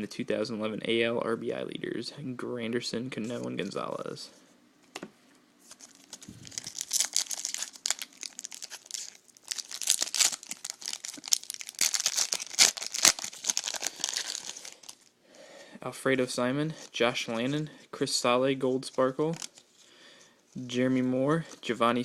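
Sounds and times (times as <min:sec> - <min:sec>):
wrapper tearing and crinkling: 0:05.7 - 0:15.1, 0:19.3 - 0:19.7.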